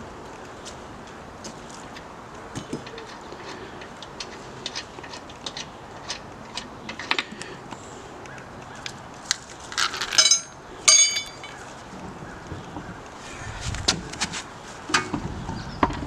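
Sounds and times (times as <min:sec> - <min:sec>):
metal tools clicking and knocking: 0:02.5 - 0:07.5, 0:09.7 - 0:11.7
ringing metal clinks: 0:10.0 - 0:11.6.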